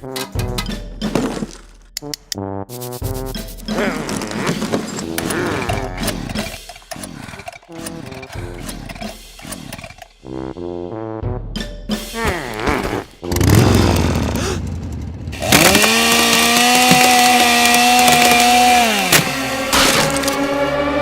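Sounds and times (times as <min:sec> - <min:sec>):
chainsaw engine revving: 0:13.3 - 0:20.6.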